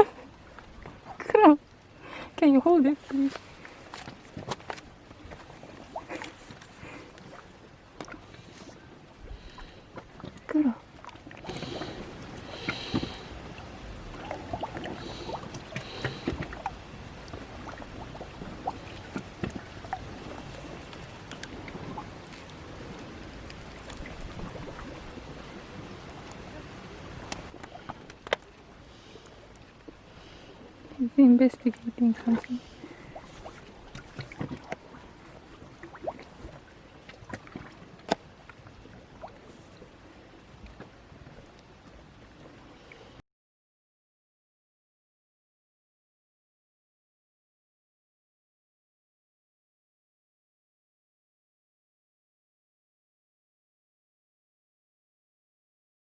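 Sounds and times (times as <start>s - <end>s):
waves lapping on rocks: 0.0s - 43.2s
water clicks drips and trickles: 2.4s - 8.5s, 9.4s - 30.0s, 31.0s - 39.5s.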